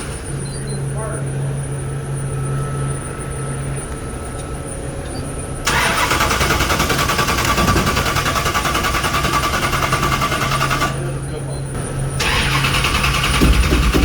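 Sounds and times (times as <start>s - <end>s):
starter cranking engine: 5.6s - 11.3s, 12.0s - 14.0s.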